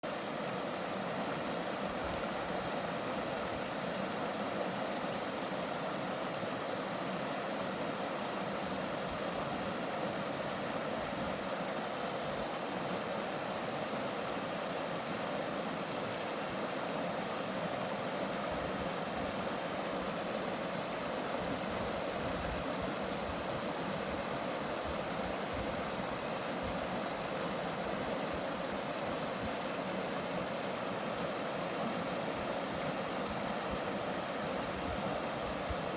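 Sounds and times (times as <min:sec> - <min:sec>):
stream flowing: 0:00.0 - 0:35.9.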